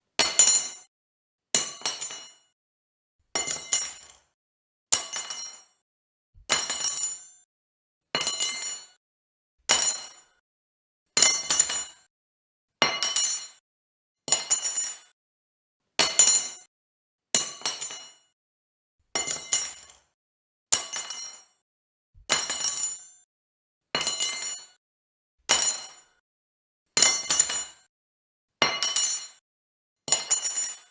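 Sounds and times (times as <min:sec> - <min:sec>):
metal fork clinking on hard surface: 0:30.2 - 0:30.9.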